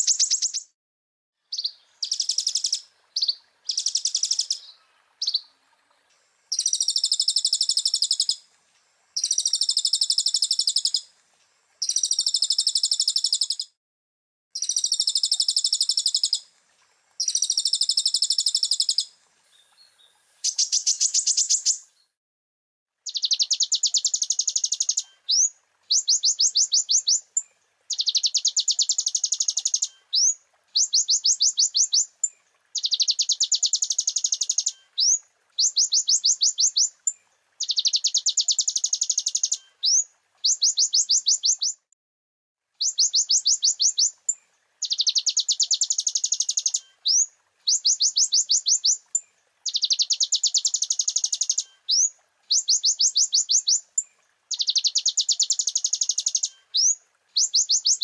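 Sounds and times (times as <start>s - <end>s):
bird singing high trills: 1.5s - 5.5s, 44.8s - 49.0s, 49.7s - 53.8s, 54.5s - 58.0s.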